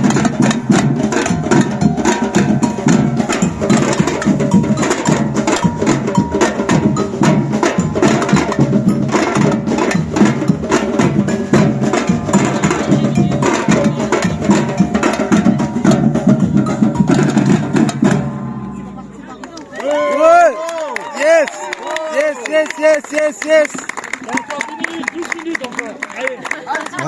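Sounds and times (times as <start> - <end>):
samba percussion ensemble: 0.0 - 20.4.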